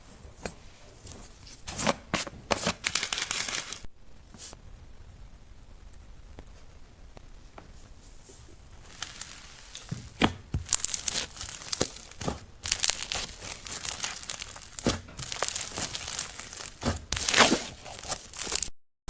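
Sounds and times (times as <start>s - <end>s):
slime crackling and popping: 8.8s - 18.8s.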